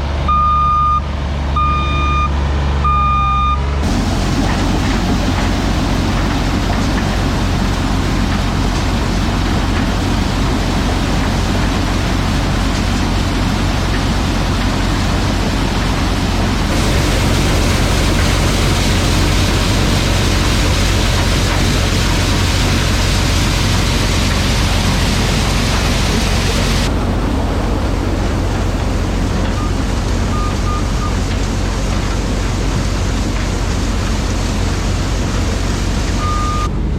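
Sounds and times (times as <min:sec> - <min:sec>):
corn sheller running: 0:03.8 - 0:36.1.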